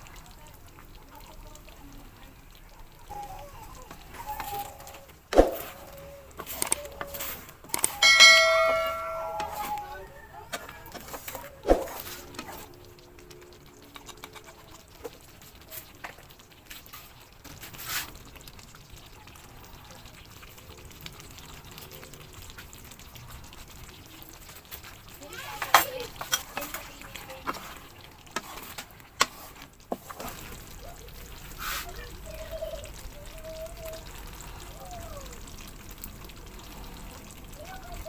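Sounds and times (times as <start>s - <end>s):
spoon stirring a pot: 3.8s - 18.2s, 23.5s - 32.0s
spoon knocking against pot: 8.0s - 9.9s.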